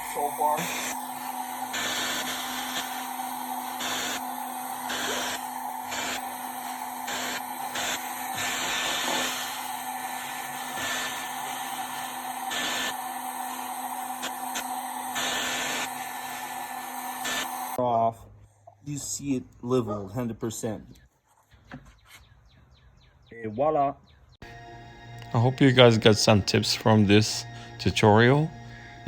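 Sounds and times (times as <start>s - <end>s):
blow dryer fan hum: 0.0s - 17.8s, 24.4s - 29.0s.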